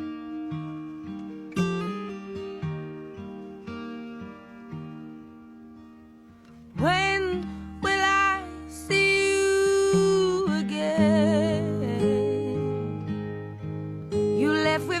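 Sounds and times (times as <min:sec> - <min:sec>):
acoustic guitar chords: 0:00.0 - 0:15.0
person singing with vibrato: 0:06.8 - 0:13.1, 0:14.4 - 0:15.0.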